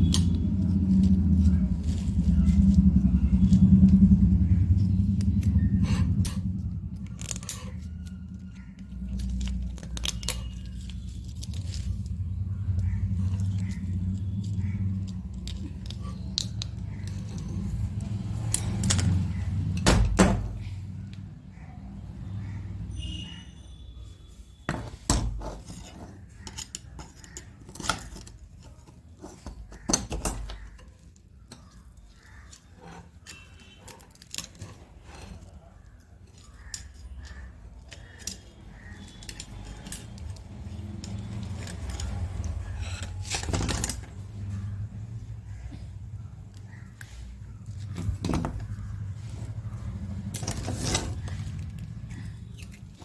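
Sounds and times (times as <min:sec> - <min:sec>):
low rumble: 0:00.0 - 0:21.5.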